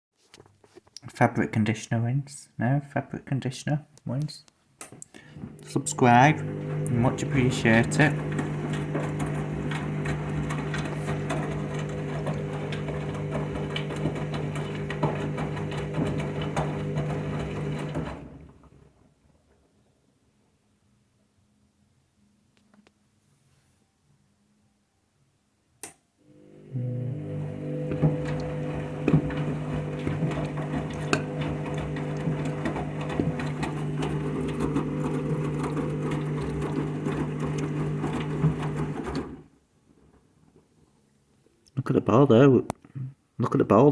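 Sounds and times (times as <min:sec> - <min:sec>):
washing machine motor hum: 0:05.2 - 0:19.2, 0:26.2 - 0:40.2.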